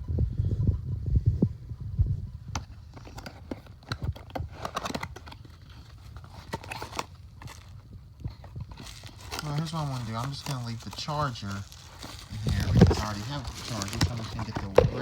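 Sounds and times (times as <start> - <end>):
packaging rustling: 3.0 - 15.0.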